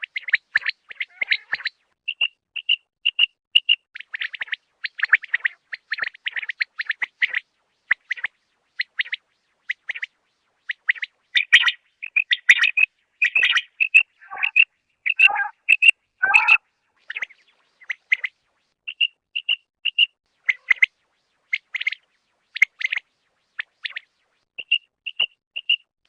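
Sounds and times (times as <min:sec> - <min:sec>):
quail chirping calls: 0:00.0 - 0:10.1, 0:10.7 - 0:18.3, 0:18.9 - 0:20.9, 0:21.5 - 0:22.0, 0:22.6 - 0:23.0.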